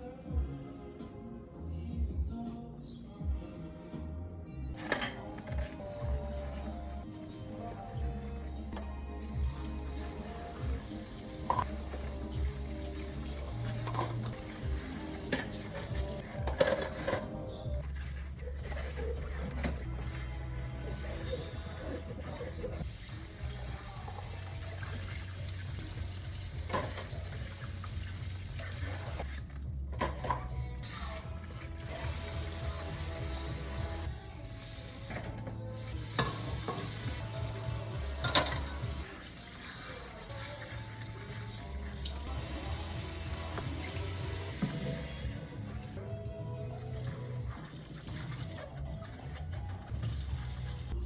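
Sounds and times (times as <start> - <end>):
soft background music: 0.0 - 51.0
tap water running into sink: 9.3 - 17.1, 22.8 - 29.3, 36.1 - 45.9.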